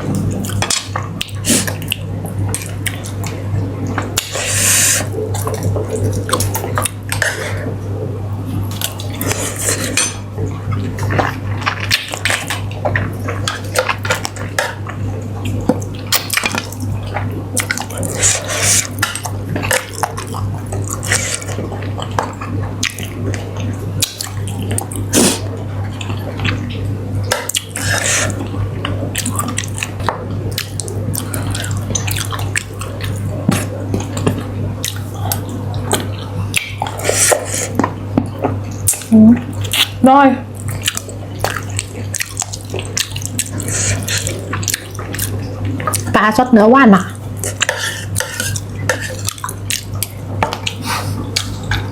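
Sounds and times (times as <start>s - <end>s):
steady low hum: 0.0s - 51.9s
wet sucking and squishing eating: 4.2s - 7.8s, 10.7s - 26.9s, 27.5s - 28.5s, 40.6s - 46.2s, 47.1s - 51.9s
dishes and cutlery clinking: 9.2s - 10.3s.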